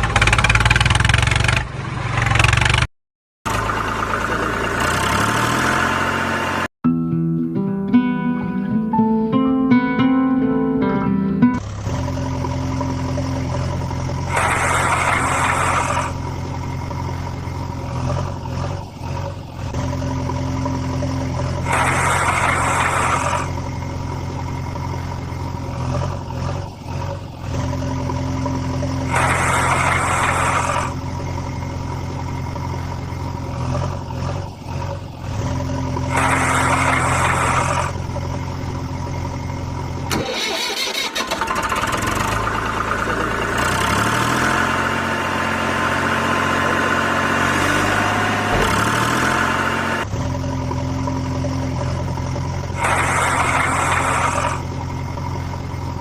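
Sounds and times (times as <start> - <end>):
heavy vehicle engine idling: 3.5 - 6.7, 11.6 - 56.0
rushing burst: 14.3 - 16.2.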